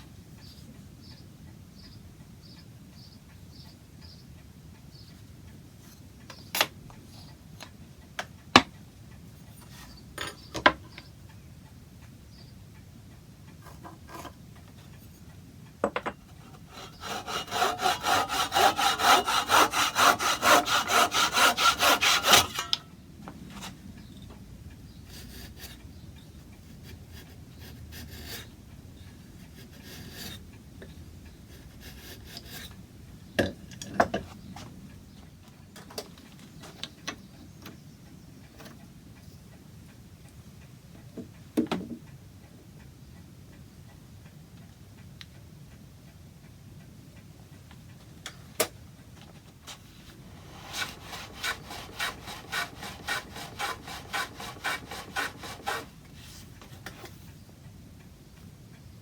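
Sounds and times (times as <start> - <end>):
wood knocking on bench: 15.8 - 16.2
hand saw cutting wood: 16.3 - 22.8, 26.7 - 28.5, 29.4 - 30.4, 31.5 - 32.7, 49.7 - 56.9.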